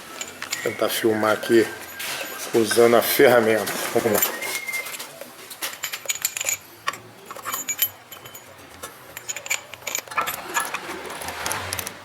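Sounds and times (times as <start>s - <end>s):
metallic clinks and taps: 0.2s - 0.8s, 5.6s - 10.8s
small steel parts knocking: 5.6s - 11.9s.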